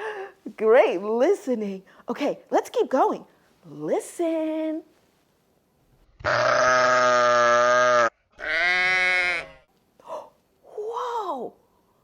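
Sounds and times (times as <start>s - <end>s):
sheep bleating: 6.2s - 9.7s.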